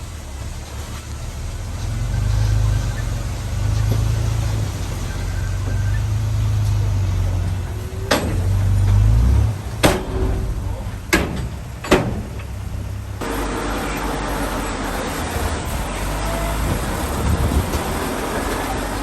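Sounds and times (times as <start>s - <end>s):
diesel machinery engine rumble: 0.0s - 19.0s
sharp metallic clanks: 4.9s - 13.8s.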